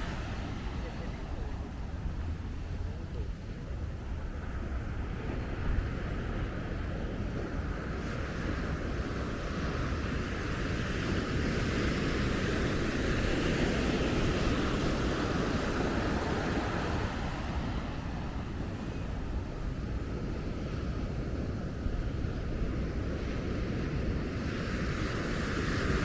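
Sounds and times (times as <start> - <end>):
surf washing onto sandy beach: 0.0 - 3.4
wind rumbling on microphone: 0.0 - 26.0.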